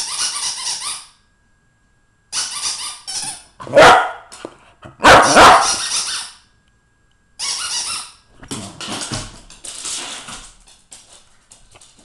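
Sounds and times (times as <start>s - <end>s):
squeaky dog toy squeaking: 0.0s - 1.2s, 2.3s - 3.6s, 5.5s - 6.4s, 7.4s - 8.2s.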